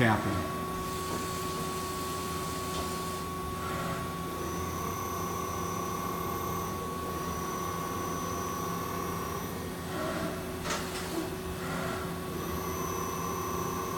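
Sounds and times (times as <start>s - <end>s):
high motor whine: 0.0s - 10.4s.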